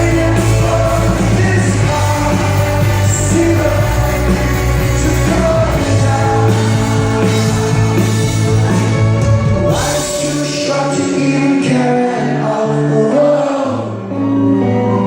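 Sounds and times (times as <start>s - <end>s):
heavy bass notes: 0.0s - 11.9s
live rock band playing: 0.0s - 15.0s
person singing: 0.0s - 15.0s.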